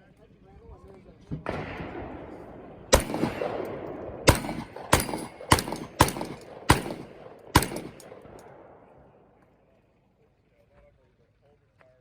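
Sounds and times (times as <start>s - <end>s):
gunshots with echo: 1.4s - 9.4s.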